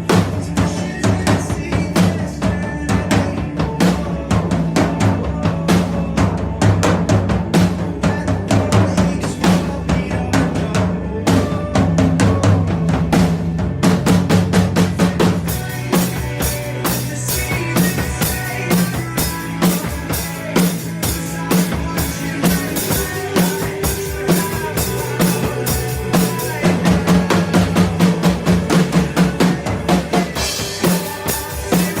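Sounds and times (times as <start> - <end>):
bass drum and snare beat: 0.0 - 32.0
recorded band track: 0.0 - 32.0.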